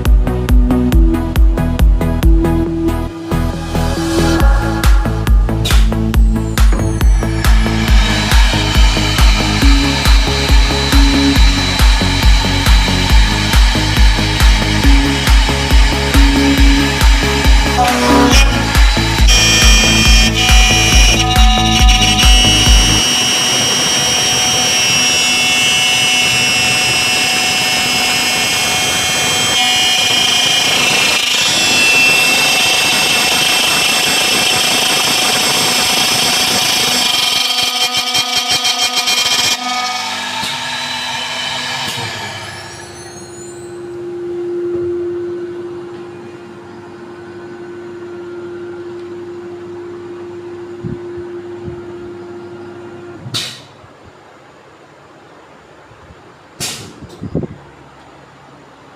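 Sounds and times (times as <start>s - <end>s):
machine steady hum: 0.0s - 56.6s
milling cutter whining: 2.9s - 48.1s
rapid pulsing: 3.1s - 37.2s.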